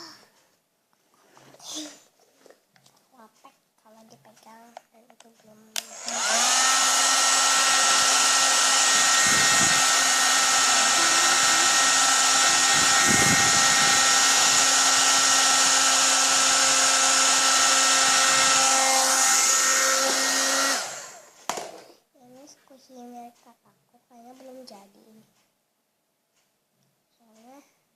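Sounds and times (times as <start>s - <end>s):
hair dryer blowing: 5.8s - 21.7s.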